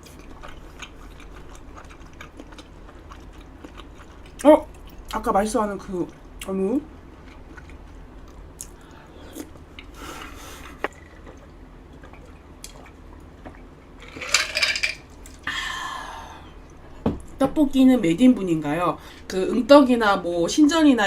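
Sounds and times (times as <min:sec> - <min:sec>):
quiet chewing: 0:00.0 - 0:05.2, 0:07.2 - 0:13.7.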